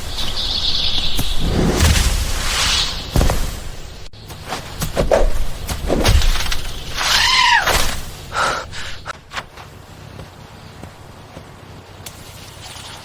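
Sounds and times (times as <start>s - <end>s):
sharp knocks and thuds: 3.0s - 7.1s, 9.1s - 11.8s.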